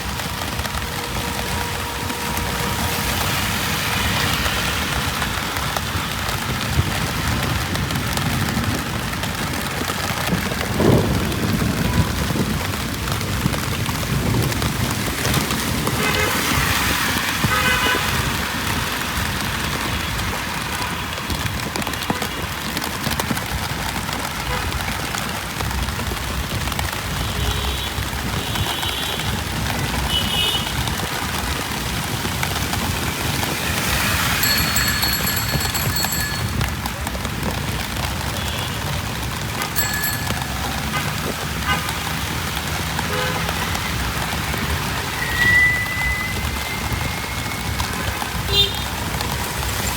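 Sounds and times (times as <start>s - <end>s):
low traffic rumble: 0.0s - 49.9s
rain on a street: 0.0s - 49.9s
vehicle horn: 16.0s - 16.7s, 17.4s - 18.1s, 43.1s - 43.6s, 48.4s - 49.0s
steady high tone: 34.4s - 36.7s.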